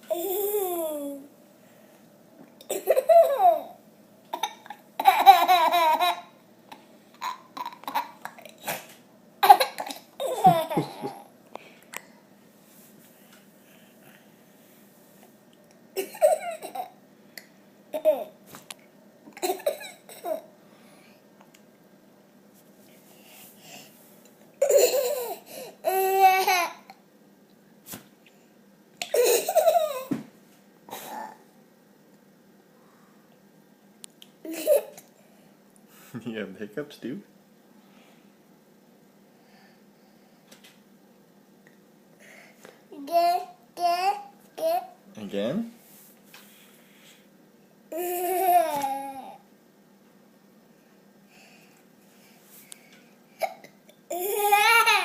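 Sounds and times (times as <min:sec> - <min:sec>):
young child laughing: 0:09.4 - 0:11.3.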